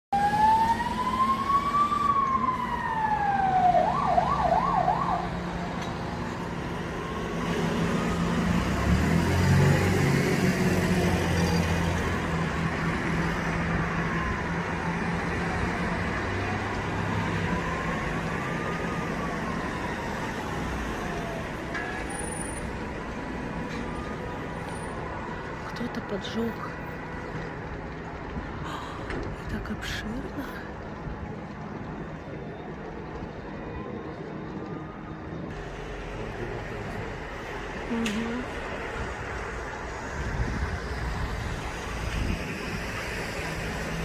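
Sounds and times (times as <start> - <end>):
emergency siren wailing: 0.1 - 44.0
faint siren wailing: 0.1 - 44.0
fast siren yelp: 0.2 - 8.5.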